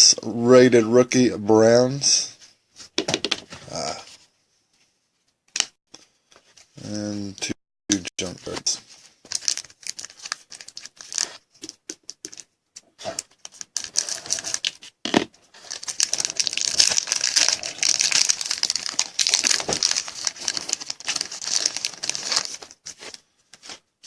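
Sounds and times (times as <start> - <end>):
wrapper being torn open: 9.3 - 11.4, 13.1 - 14.8, 15.6 - 23.2
foil wrapper crinkling: 9.3 - 12.4, 13.1 - 14.8, 15.5 - 23.8.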